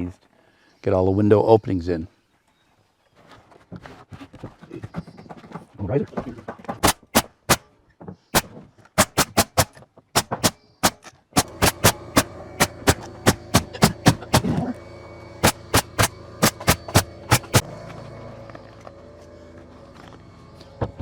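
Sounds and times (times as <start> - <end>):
nail gun firing: 6.8 - 7.7, 8.4 - 14.7, 15.4 - 17.6
steady hum: 9.0 - 17.8.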